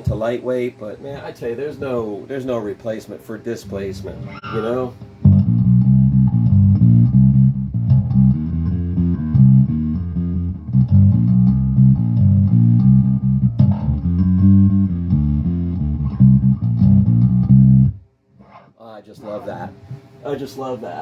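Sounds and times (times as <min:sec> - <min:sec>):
electric bass riff: 0:04.1 - 0:18.6.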